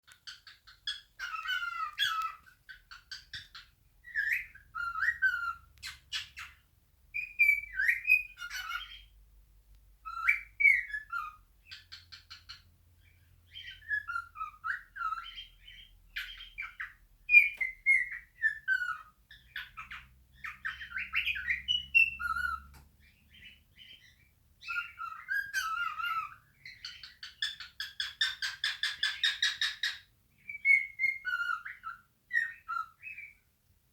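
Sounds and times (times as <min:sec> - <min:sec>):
cockatiel chattering: 0:00.1 - 0:06.6, 0:07.2 - 0:09.1, 0:24.0 - 0:32.9
cockatiel whistling: 0:00.2 - 0:09.1, 0:10.0 - 0:12.6, 0:13.5 - 0:22.7, 0:23.3 - 0:33.4.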